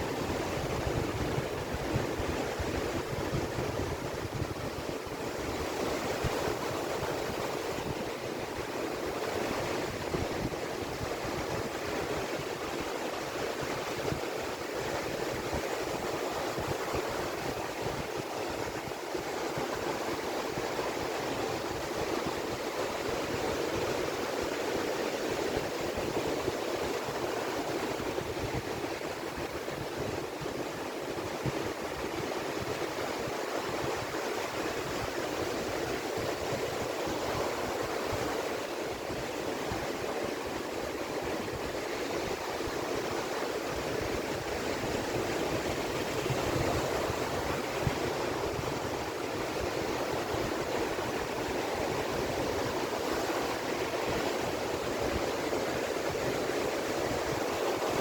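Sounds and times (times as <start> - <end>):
ocean waves breaking on shore: 0.0 - 58.0.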